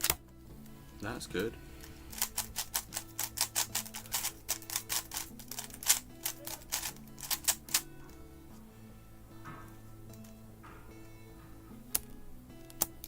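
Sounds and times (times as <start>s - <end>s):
faint background music: 0.0s - 13.0s
plastic puzzle cube clicking: 1.8s - 7.9s, 11.9s - 13.0s.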